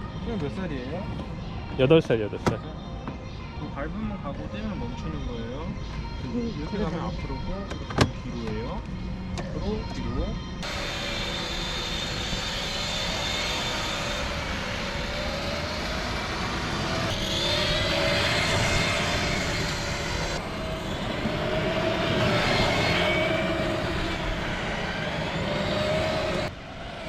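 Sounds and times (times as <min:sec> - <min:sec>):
steady rumble: 0:07.2 - 0:27.0
ride-on toy car motor whining: 0:10.6 - 0:27.0.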